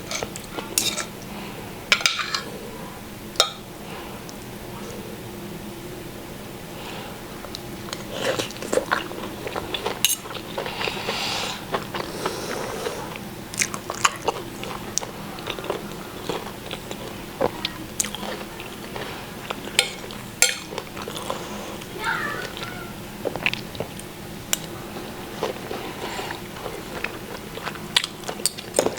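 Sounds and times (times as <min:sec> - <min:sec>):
person chewing crunchy food: 0:07.5 - 0:28.9.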